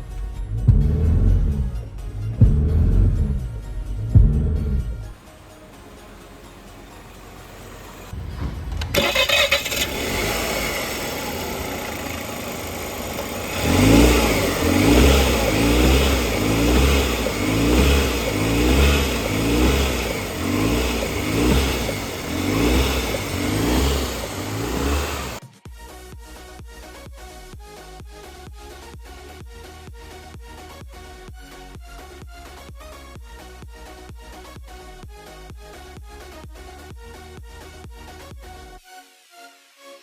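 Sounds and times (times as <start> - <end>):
diesel engine starting and idling: 0.0 - 25.4
low engine thudding: 0.0 - 25.4.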